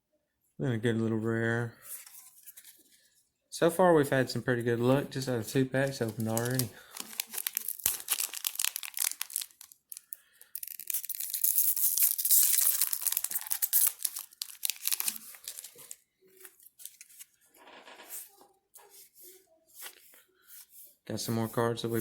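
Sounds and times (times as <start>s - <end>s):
cards rustling and clicking: 4.8s - 22.0s
foil pack tearing and crinkling: 5.8s - 17.3s.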